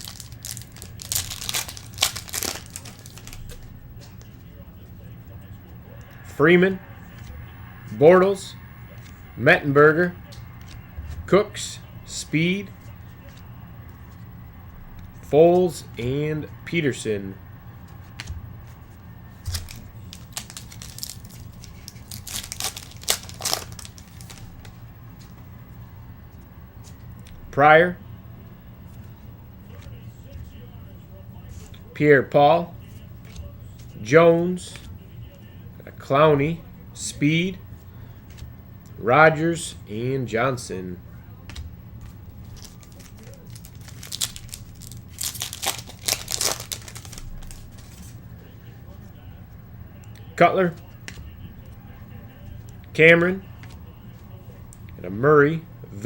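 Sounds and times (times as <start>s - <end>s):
wrapper crinkling and tearing: 0.0s - 3.6s, 19.4s - 24.7s, 42.5s - 48.2s.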